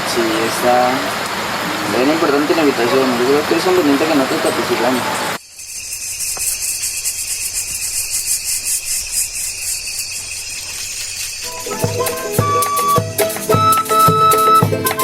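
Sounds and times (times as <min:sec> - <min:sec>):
insects trilling: 0:01.8 - 0:13.2.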